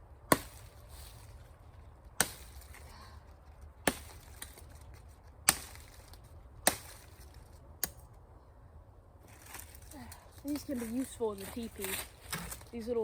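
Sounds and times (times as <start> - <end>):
machete chopping branches: 0.2 - 1.4, 2.1 - 2.9, 3.8 - 8.1, 9.4 - 12.7.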